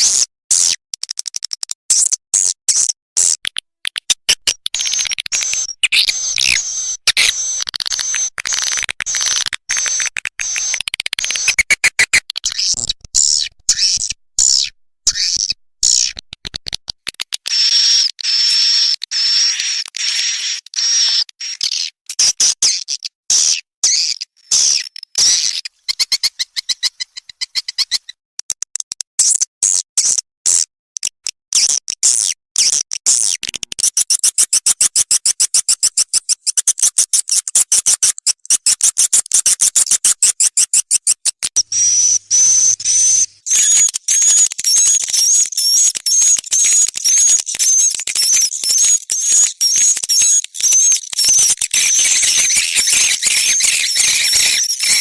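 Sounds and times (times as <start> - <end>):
fast clicking pulses: 3.2 - 14.5, 43.5 - 55.0
swiftlets chirping and twittering: 4.5 - 16.1, 41.6 - 55.0.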